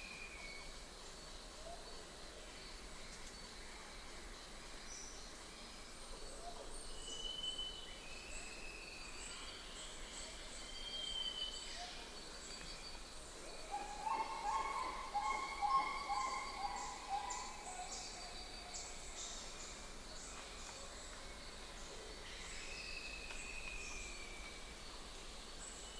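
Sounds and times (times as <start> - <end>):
background hiss: 0.0 - 25.9
insects chirring: 10.5 - 21.1.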